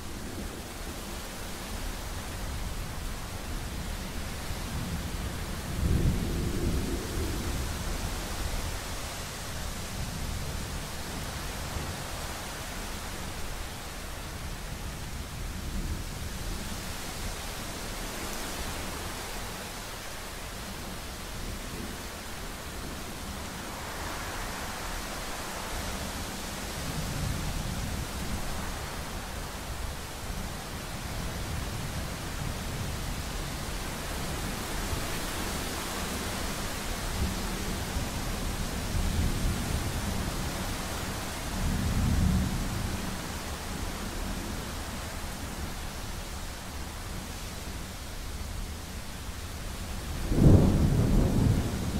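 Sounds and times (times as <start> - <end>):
rain hissing: 0.0 - 51.9
low thunder rumble: 4.7 - 8.9, 50.0 - 51.9.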